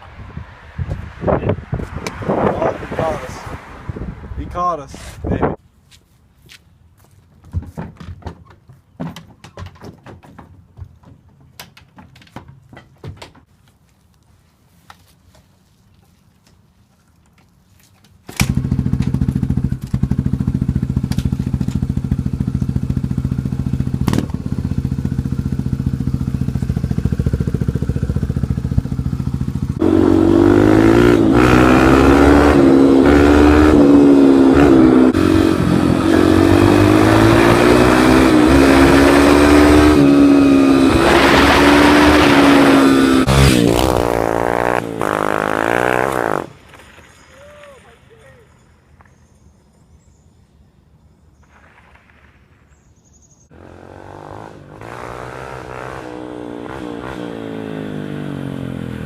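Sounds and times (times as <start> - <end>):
dirt bike engine revving: 18.4 - 46.5, 53.5 - 59.0.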